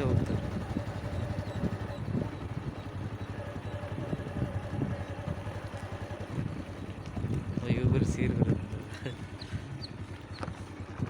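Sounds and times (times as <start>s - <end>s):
motor running at low speed: 0.0s - 11.0s.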